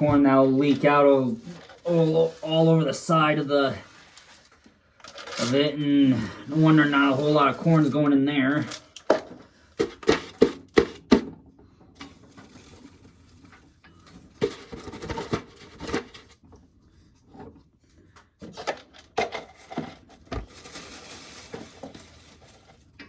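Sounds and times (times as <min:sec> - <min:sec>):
corn kernels clattering and rattling: 0:05.0 - 0:05.7, 0:18.5 - 0:22.9.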